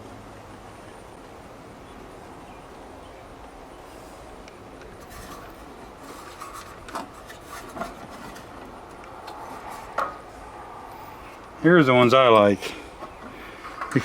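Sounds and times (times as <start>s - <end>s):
hands rubbing and shuffling tools: 4.9s - 11.6s.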